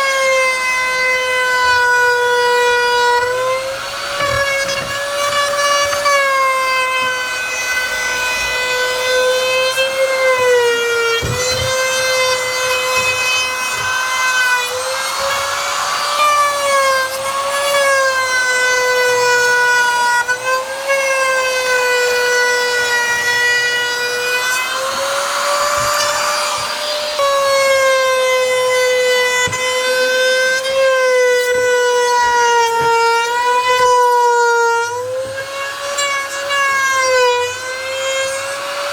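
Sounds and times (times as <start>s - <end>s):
wood router high whine: 0.0s - 38.9s
hissy wood cutting noise: 21.6s - 38.9s.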